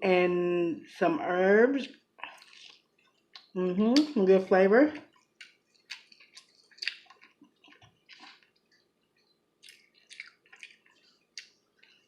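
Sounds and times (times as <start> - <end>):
wet chewing smacks: 1.8 - 4.2, 5.0 - 12.0.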